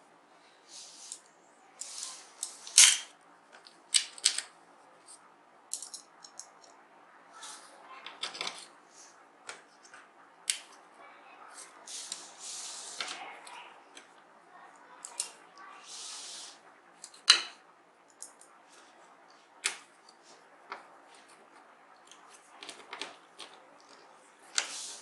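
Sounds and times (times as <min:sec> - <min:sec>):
small parts clicking and scraping: 0:00.7 - 0:06.8, 0:15.0 - 0:25.0.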